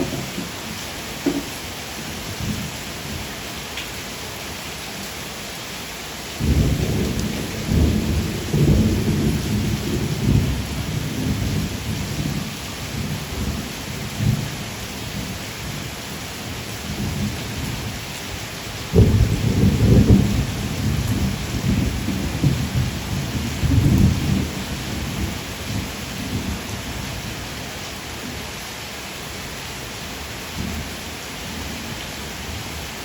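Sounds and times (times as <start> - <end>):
thunder rumbling: 0.0 - 2.7, 6.4 - 12.4, 18.9 - 26.7
steady rain falling: 0.0 - 33.0.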